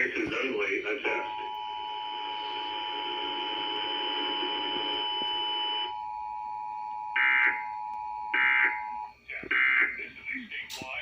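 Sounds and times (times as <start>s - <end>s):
warbling data tones: 1.0s - 6.2s.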